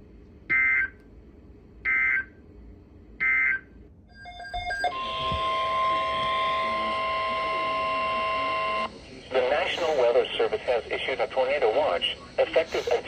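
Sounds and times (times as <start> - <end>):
steady electronic alert tone: 4.1 - 8.9
stutter of tones: 4.1 - 8.9.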